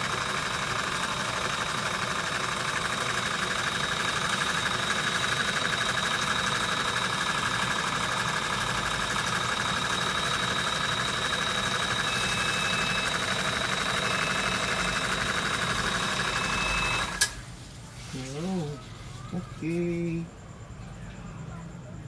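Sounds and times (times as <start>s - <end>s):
electric motor whining: 9.9s - 17.4s.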